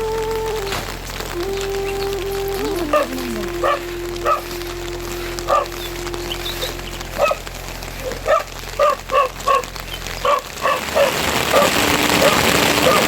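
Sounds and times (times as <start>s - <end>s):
rain hiss: 0.0s - 13.0s
dog barking in sharp yelps: 8.2s - 13.0s.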